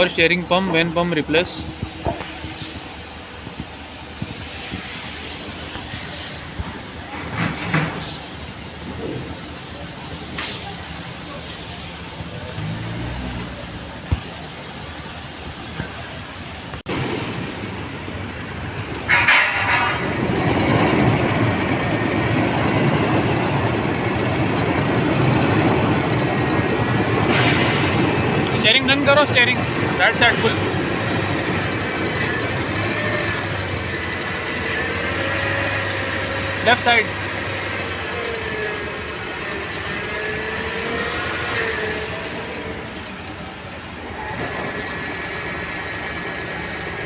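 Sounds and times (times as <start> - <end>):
car engine idling: 13.4 - 44.2.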